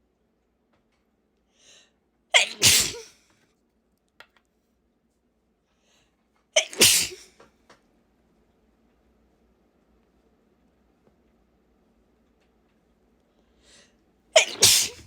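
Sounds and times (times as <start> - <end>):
person sneezing: 2.4 - 3.2, 6.6 - 7.3, 14.4 - 15.0.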